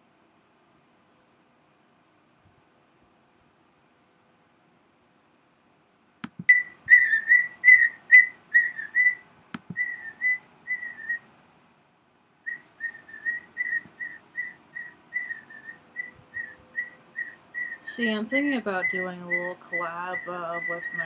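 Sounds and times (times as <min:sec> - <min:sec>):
sharp clicks: 0:06.2 - 0:06.6, 0:09.5 - 0:09.9
cockatiel whistling: 0:06.4 - 0:11.3, 0:12.5 - 0:17.9, 0:18.8 - 0:21.0.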